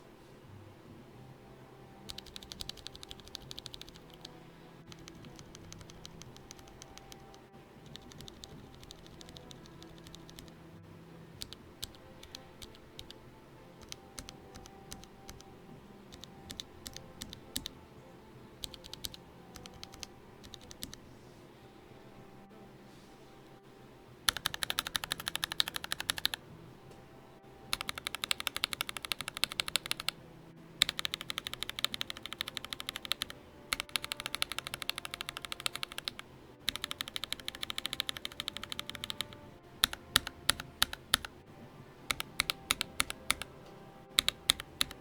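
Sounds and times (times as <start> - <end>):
mechanical keyboard typing: 2.1 - 10.6, 11.4 - 13.2, 13.8 - 15.5, 16.1 - 17.8, 18.6 - 21.0, 24.3 - 26.4, 27.7 - 30.2, 30.8 - 41.4, 42.1 - 43.6, 44.2 - 45.0.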